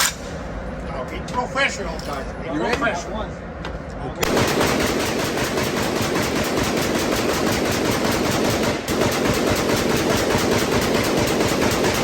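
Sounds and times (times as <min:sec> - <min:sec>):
rapid gunshots: 0:04.2 - 0:12.0.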